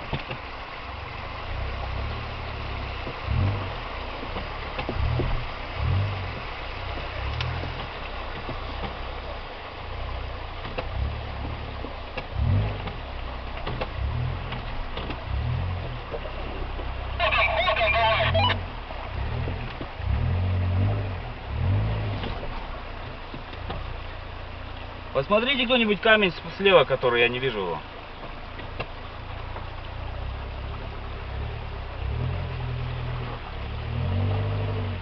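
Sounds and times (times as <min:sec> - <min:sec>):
off-road vehicle engine rumbling: 0:00.0 - 0:35.0.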